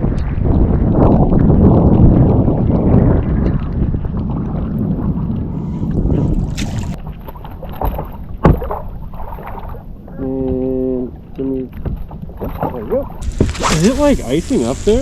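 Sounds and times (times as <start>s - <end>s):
wind rumbling on microphone: 0.0s - 15.0s
short hiss: 13.2s - 15.0s.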